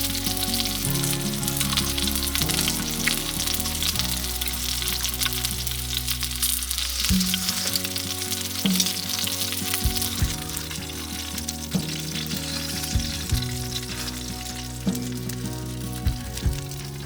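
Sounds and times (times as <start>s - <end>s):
background music of held notes: 0.0s - 17.0s
sizzling crackle: 0.0s - 17.0s.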